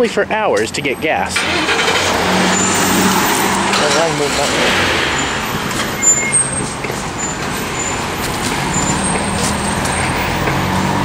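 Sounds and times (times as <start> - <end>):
car engines humming: 0.0 - 11.0
traffic rushing noise: 0.0 - 11.0
brief high squeaks: 5.0 - 8.0.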